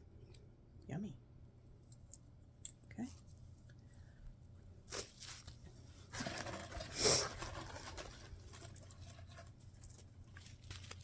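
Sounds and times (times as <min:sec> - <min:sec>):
packaging rustling: 0:06.2 - 0:11.0.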